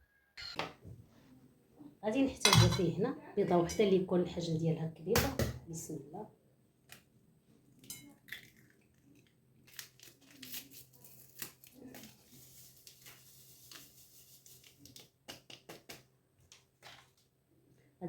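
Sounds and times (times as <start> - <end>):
egg shell cracking: 8.2 - 12.0.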